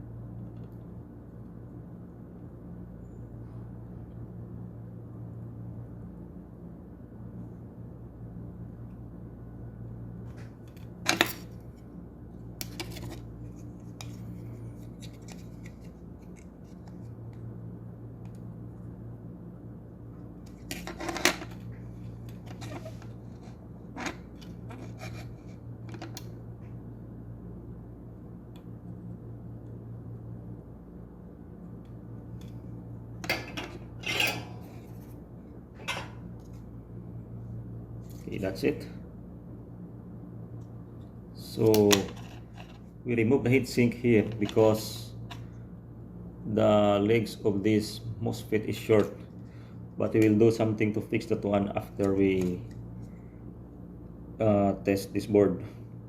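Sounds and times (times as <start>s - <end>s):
low electrical hum: 0.0s - 56.0s
metal tools clinking: 33.2s - 34.9s.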